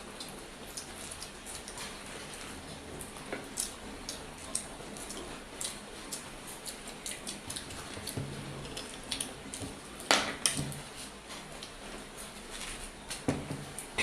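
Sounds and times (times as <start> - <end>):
people chewing: 0.0 - 14.0.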